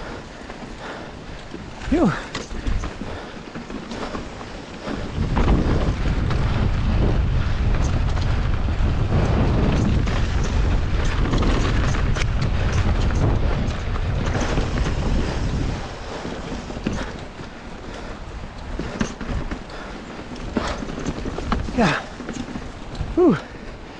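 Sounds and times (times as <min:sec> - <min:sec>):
bike rattling over dirt trail: 0:00.0 - 0:23.9
wind buffeting microphone: 0:00.0 - 0:23.9.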